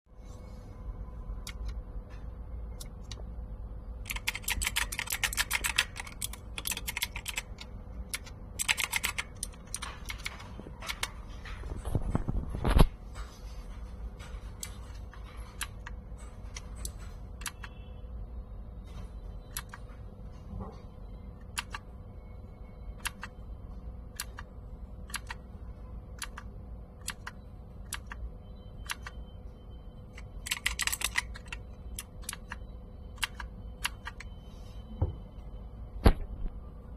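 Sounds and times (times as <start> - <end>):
steady low hum: 0.1 - 36.9
mechanical keyboard key clicks: 4.1 - 11.1, 23.0 - 23.3, 24.2 - 24.5, 25.1 - 25.4, 27.0 - 28.2, 30.4 - 32.6, 33.2 - 34.3.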